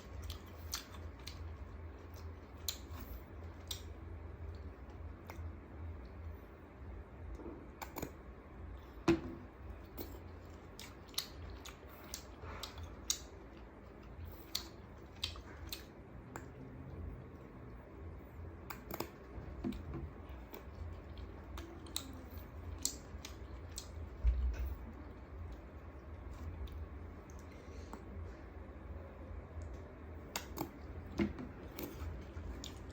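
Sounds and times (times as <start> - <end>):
chewing crunches: 0.0 - 5.4, 9.7 - 16.6, 18.6 - 28.0, 30.2 - 32.9
steady low hum: 0.0 - 32.9.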